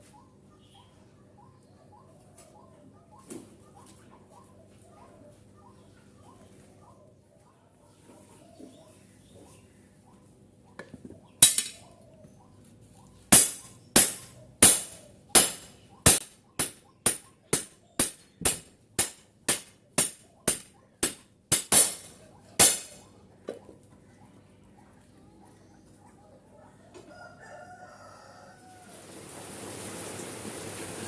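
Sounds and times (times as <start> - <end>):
hammer striking machete blade: 13.3 - 23.0.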